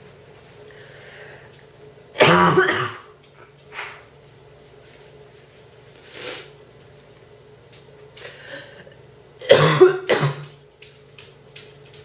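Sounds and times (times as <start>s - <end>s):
soft breath: 0.7s - 1.6s
woman coughing: 2.2s - 3.1s, 9.4s - 10.5s.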